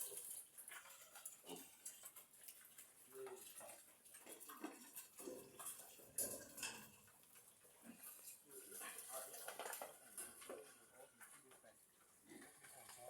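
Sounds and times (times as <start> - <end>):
faint clinks and knocks: 0.0 - 13.0.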